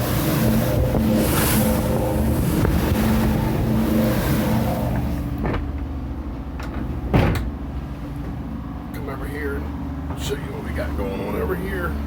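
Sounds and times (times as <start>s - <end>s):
rough water hissing: 0.0s - 5.4s
wind buffeting microphone: 0.0s - 6.2s
boat engine running: 0.0s - 12.0s.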